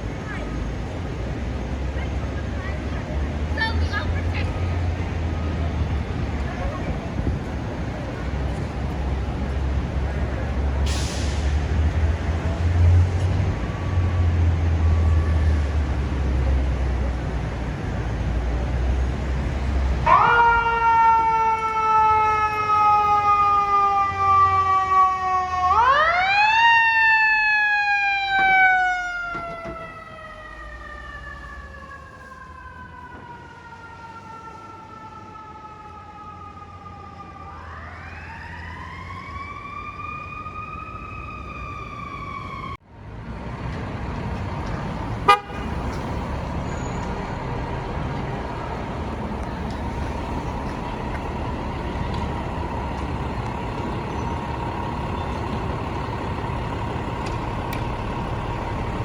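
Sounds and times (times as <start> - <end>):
street traffic noise: 0.0 - 59.0.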